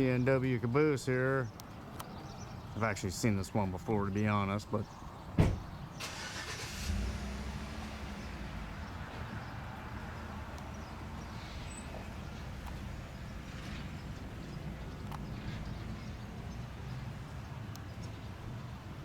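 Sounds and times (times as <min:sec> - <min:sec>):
motorcycle engine starting and idling: 0:06.0 - 0:12.1.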